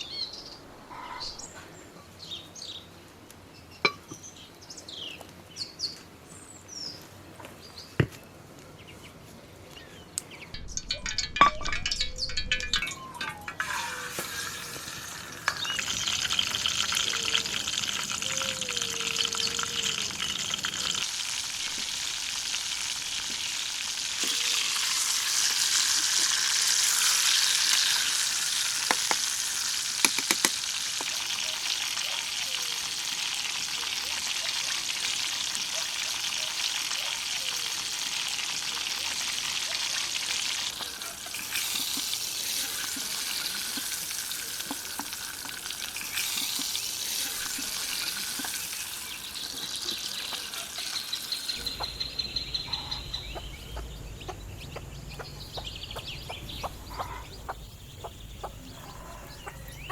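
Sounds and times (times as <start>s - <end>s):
food sizzling in a pan: 13.2s - 51.7s.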